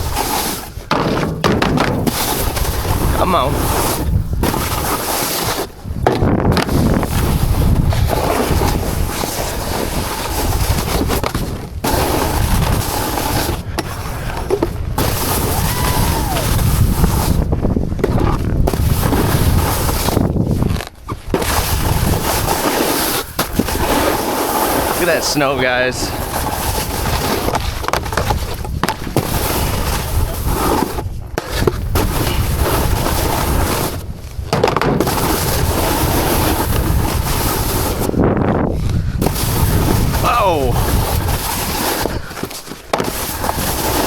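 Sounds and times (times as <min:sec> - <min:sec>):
wind on microphone: 0:00.0 - 0:22.7, 0:25.6 - 0:44.0
snowboard scraping over snow: 0:00.0 - 0:44.0.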